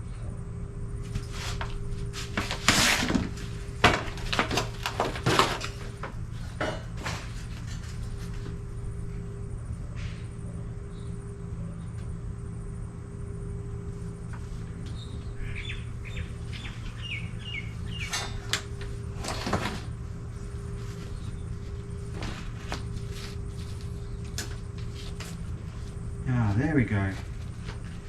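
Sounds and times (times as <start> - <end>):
steady low hum: 0.0 - 28.0
scraping and rustling of parts: 1.1 - 8.6, 18.0 - 26.0
bird singing falling notes: 14.9 - 18.4.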